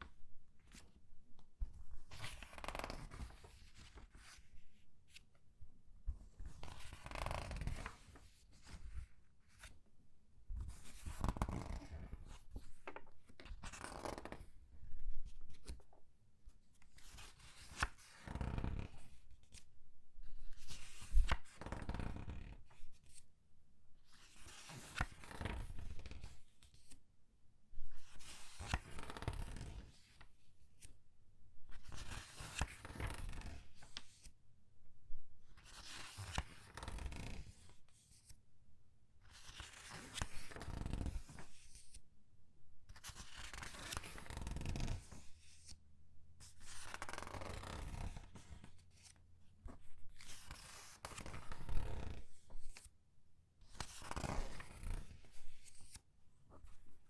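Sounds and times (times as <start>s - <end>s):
comic book pages rustling: 39.4s - 41.9s.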